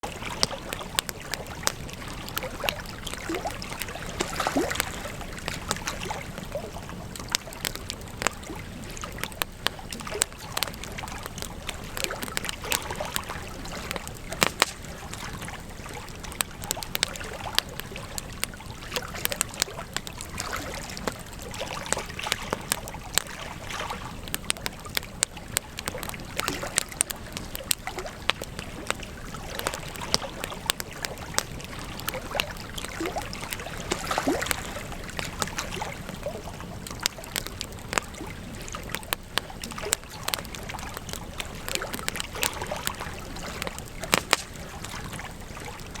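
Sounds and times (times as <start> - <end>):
campfire crackling and popping: 0.0 - 46.0
hiss of flames: 4.8 - 20.4, 34.9 - 46.0.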